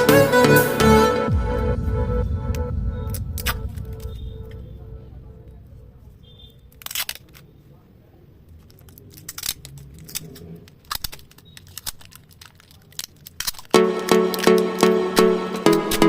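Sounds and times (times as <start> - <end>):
plastic parts clicking and knocking: 8.6 - 16.0.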